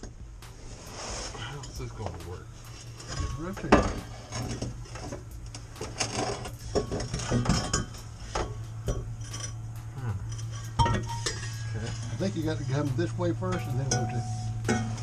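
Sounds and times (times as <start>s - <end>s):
steady low hum: 0.0s - 15.0s
metal exhaust pipe clanking: 1.3s - 15.0s.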